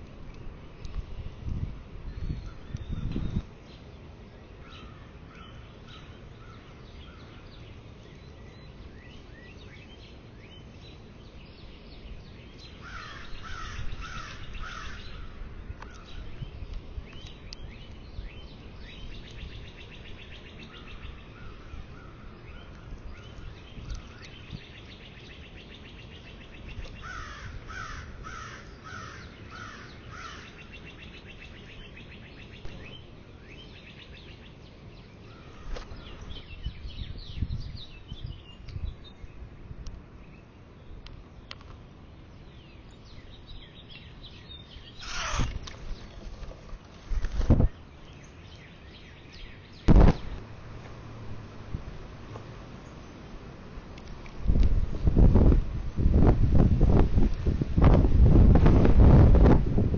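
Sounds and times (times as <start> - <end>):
light bird chirps: 0.0 - 51.1
low wind rumble: 0.0 - 59.9
bird calling harsh notes: 44.9 - 45.6.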